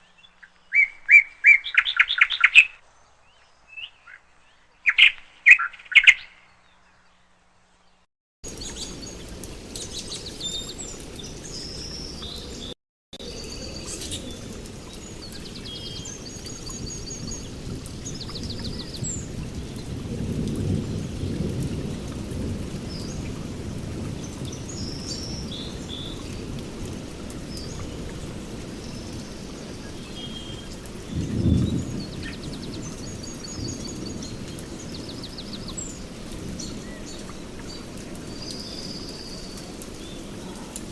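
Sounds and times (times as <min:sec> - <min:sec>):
small birds chirping: 0:00.0 - 0:40.9
steady rain-like hiss: 0:02.8 - 0:04.8, 0:06.5 - 0:40.9
low rumble of thunder: 0:13.2 - 0:39.4.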